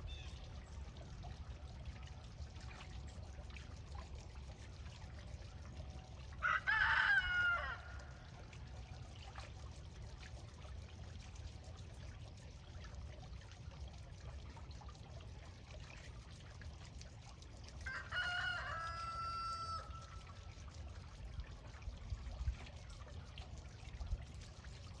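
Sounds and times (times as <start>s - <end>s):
water trickling: 0.0s - 25.0s
rooster crowing: 6.4s - 8.0s, 17.8s - 20.0s.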